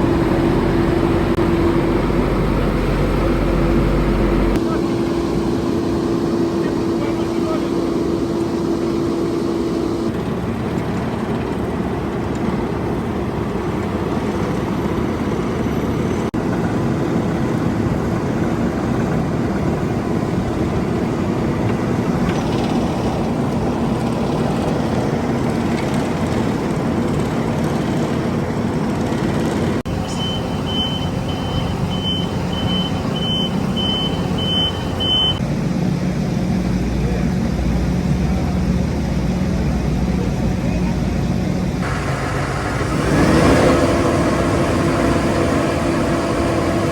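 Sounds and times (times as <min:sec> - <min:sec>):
heavy machinery diesel engines: 0:00.0 - 0:46.9
reversing alarm beeping: 0:29.9 - 0:35.4.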